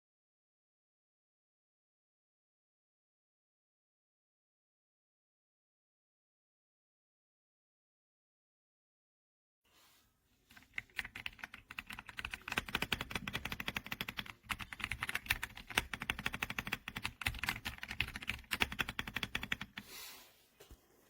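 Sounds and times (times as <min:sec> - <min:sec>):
mechanical keyboard typing: 0:10.6 - 0:19.8.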